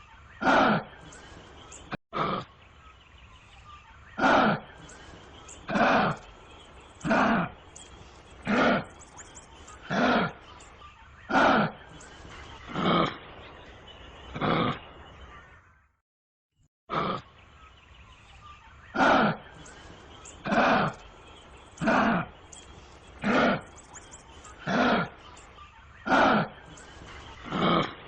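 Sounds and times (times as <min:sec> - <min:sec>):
kangaroo guttural calls: 0:00.3 - 0:02.6, 0:04.1 - 0:13.4, 0:14.3 - 0:15.0, 0:16.9 - 0:17.3, 0:18.8 - 0:28.0.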